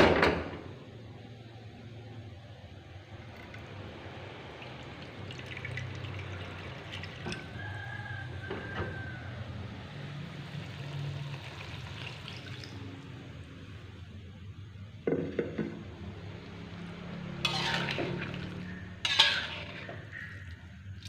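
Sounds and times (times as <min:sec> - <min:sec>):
liquid bubbling in a pot: 0:03.1 - 0:08.3, 0:10.2 - 0:14.2, 0:16.1 - 0:21.0.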